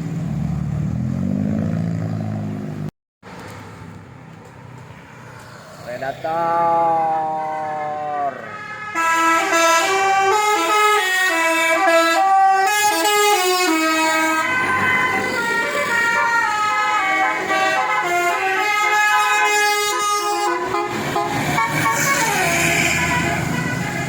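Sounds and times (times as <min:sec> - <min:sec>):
bus musical air horn tune: 0:07.4 - 0:14.7, 0:15.4 - 0:24.0.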